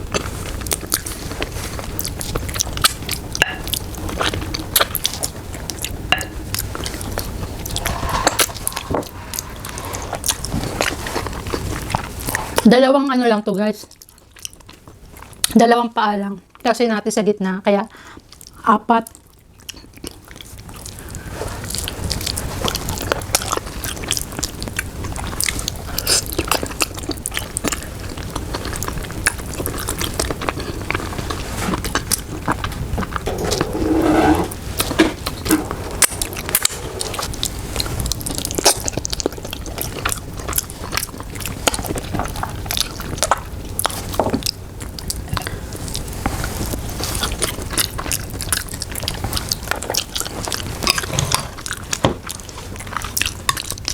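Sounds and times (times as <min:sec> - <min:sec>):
wet chewing and mouth clicks: 0:00.1 - 0:12.6, 0:13.9 - 0:15.6, 0:36.3 - 0:53.9.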